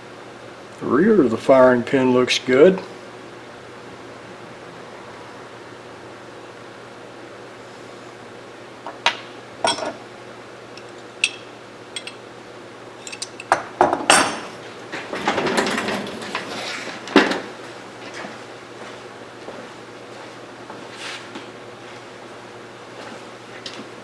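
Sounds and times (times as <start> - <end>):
metal parts clinking on a bench: 9.6 - 10.0, 10.8 - 12.2, 13.0 - 14.5.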